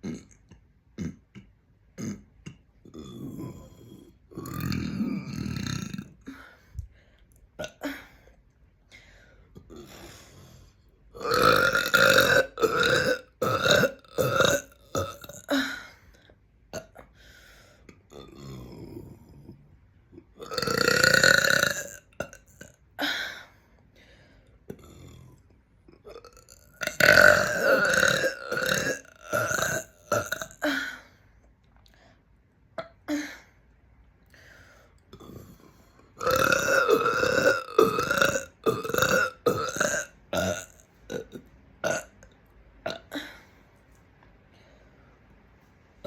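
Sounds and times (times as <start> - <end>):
person belching loudly: 0.0 - 6.3, 11.2 - 15.6, 18.1 - 19.2, 20.2 - 22.8, 26.0 - 30.8, 36.2 - 42.2, 42.9 - 43.3.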